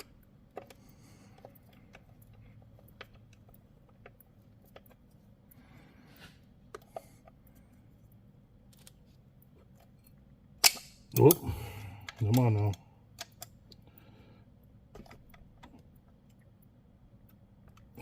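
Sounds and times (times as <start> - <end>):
low steady hum: 0.0 - 18.0
clicks of small metal parts: 12.0 - 13.8.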